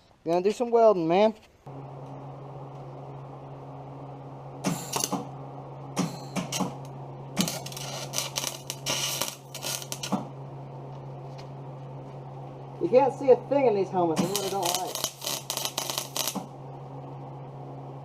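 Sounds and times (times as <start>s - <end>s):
steady low hum: 0.0s - 18.0s
welding arc crackling: 4.6s - 11.5s, 12.8s - 16.6s.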